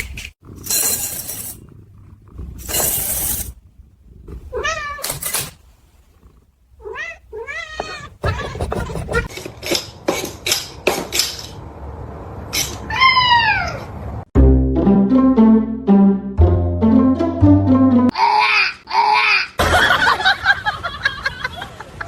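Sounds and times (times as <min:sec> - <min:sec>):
cat meowing: 0:04.5 - 0:05.3, 0:06.8 - 0:09.3.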